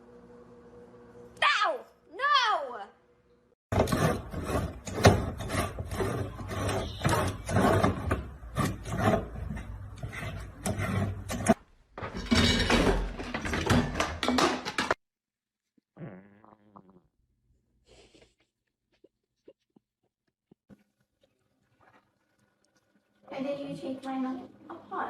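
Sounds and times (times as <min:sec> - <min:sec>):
rapid scratching and rubbing: 0:03.8 - 0:11.3.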